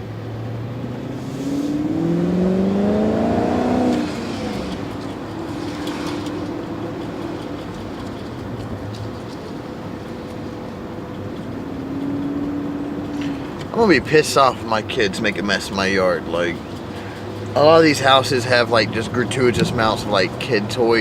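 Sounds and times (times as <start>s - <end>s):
car exhaust accelerating: 0.0s - 21.0s.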